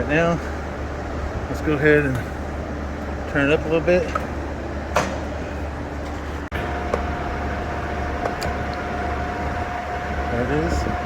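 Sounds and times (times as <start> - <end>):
high whine: 0.0 - 11.0
lathe running hum: 5.5 - 11.0.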